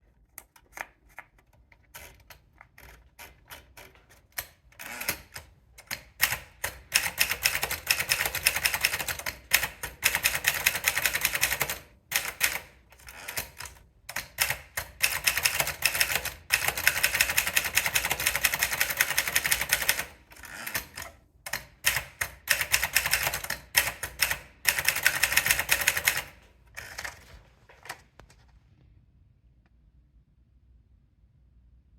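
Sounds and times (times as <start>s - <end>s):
typewriter keystrokes: 2.0s - 27.3s.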